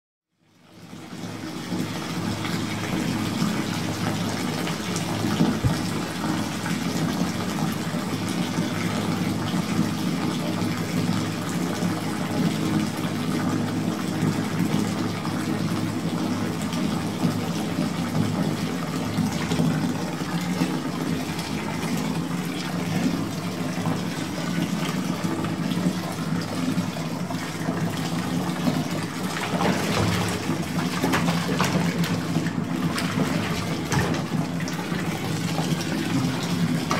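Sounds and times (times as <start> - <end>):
water running into a bathtub: 0.4 - 36.9
small water splashes: 19.3 - 36.9.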